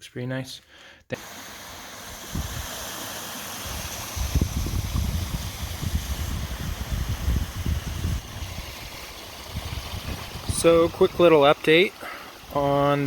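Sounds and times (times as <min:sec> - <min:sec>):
wind buffeting microphone: 0:02.3 - 0:02.7, 0:03.6 - 0:11.3.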